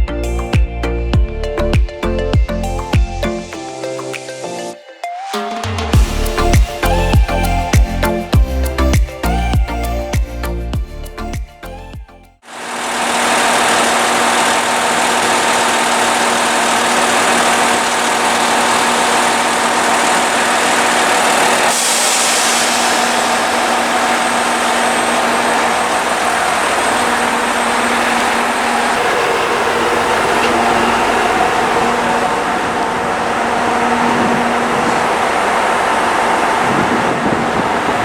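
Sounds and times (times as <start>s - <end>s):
vehicle engine running: 12.6s - 38.0s
brief hiss: 21.6s - 24.5s.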